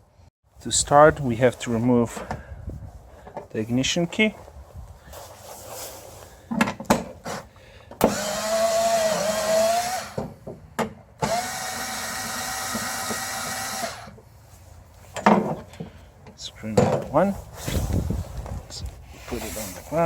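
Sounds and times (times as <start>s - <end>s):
power driver running: 8.0s - 10.2s, 11.2s - 14.1s.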